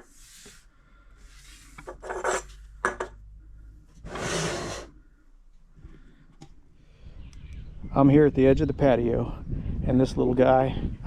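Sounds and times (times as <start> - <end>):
objects scraping on a surface: 0.0 - 0.6, 1.2 - 3.1, 4.0 - 5.0.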